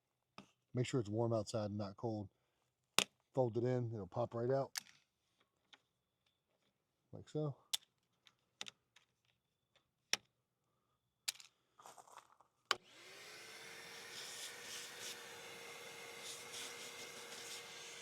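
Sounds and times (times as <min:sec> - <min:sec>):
shop vacuum motor whine: 0:12.7 - 0:18.0.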